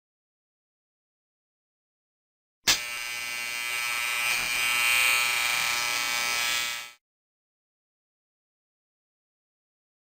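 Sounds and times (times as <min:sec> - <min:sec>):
electric shaver buzzing: 0:02.7 - 0:07.0.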